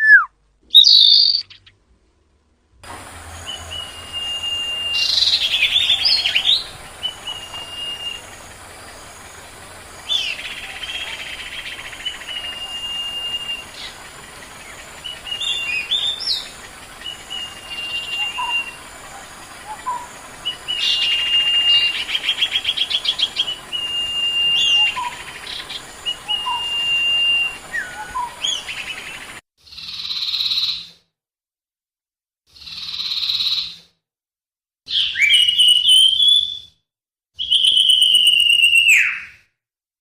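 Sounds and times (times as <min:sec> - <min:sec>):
bird whistling and chirping: 0:00.0 - 0:01.6, 0:03.4 - 0:09.4, 0:10.0 - 0:29.3, 0:34.9 - 0:36.7, 0:37.4 - 0:39.3.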